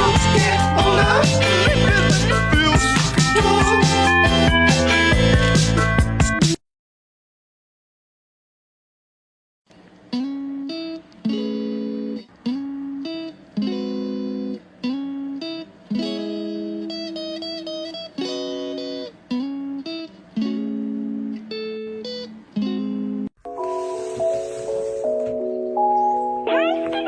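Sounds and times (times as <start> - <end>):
plucked string instrument chords: 10.1 - 27.0.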